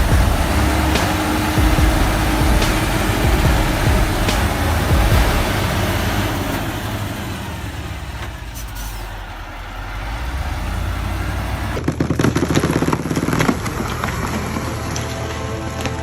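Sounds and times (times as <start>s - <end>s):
low rumble: 0.0s - 8.5s
heavy vehicle engine running: 0.0s - 16.0s
dense cracks and clicks: 11.8s - 16.0s.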